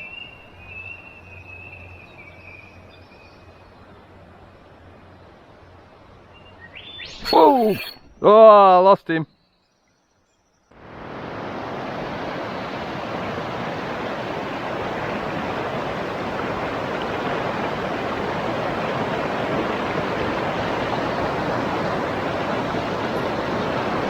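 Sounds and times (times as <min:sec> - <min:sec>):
fast-flowing river water rushing: 0:10.8 - 0:24.0.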